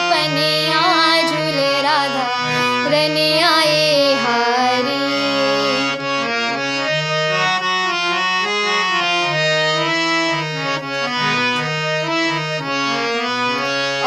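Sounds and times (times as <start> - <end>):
harmonium melody: 0.0 - 14.0.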